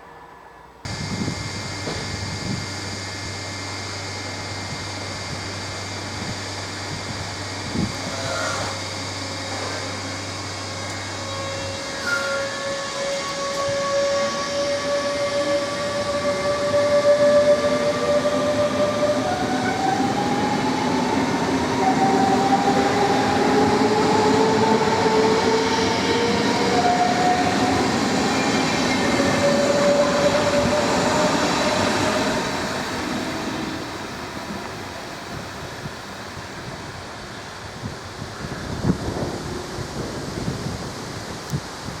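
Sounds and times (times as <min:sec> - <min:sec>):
train rumble: 0:00.0 - 0:42.0
electric drive whining: 0:00.9 - 0:17.1.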